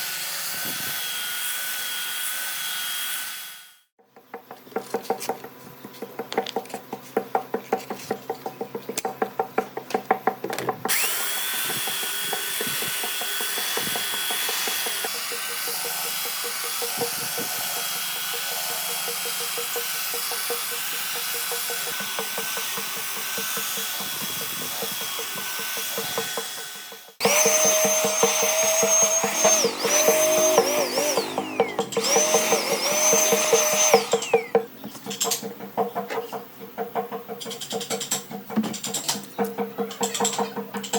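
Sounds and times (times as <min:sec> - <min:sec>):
power tool whining on wood: 0:10.8 - 0:34.7.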